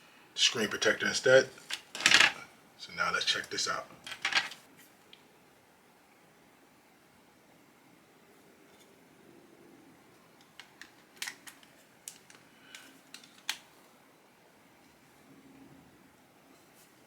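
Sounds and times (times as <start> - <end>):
plastic phone case clicking: 10.5 - 12.4.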